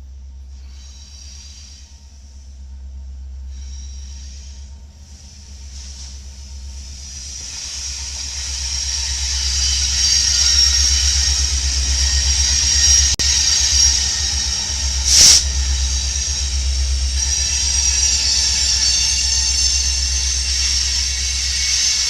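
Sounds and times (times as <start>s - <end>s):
train rumble: 0.0s - 22.0s
high hiss: 0.6s - 2.6s, 3.5s - 22.0s
short sharp hiss: 15.1s - 15.4s.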